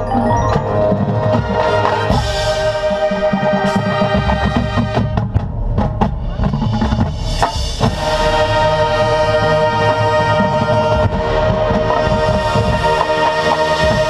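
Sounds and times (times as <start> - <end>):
brass chord: 0.0 - 5.1, 8.0 - 14.0
drum-line hits: 0.0 - 9.2, 9.9 - 14.0.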